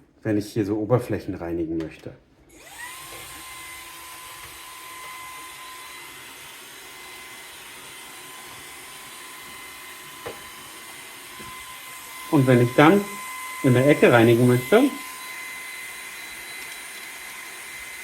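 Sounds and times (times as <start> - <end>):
vacuum motor whine: 2.5 - 18.0.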